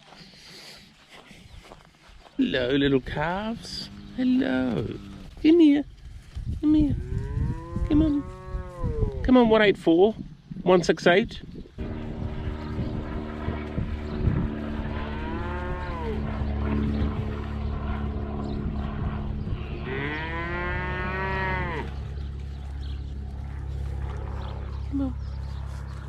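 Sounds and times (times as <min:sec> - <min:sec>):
cattle mooing: 0:03.8 - 0:05.4, 0:07.1 - 0:09.2, 0:14.8 - 0:16.5, 0:19.6 - 0:22.0
low machine hum: 0:11.8 - 0:26.0.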